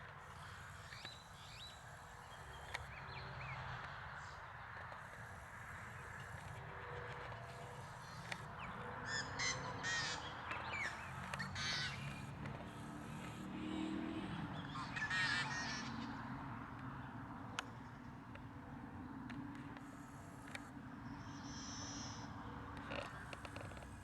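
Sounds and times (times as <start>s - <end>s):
harsh bird calls: 0.2s - 17.1s.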